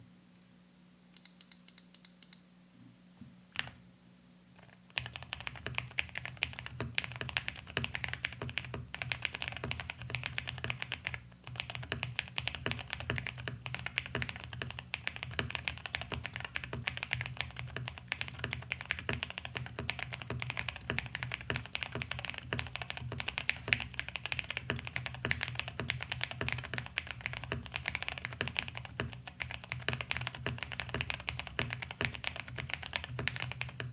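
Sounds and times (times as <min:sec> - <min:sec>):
mechanical keyboard typing: 0:04.9 - 0:33.9.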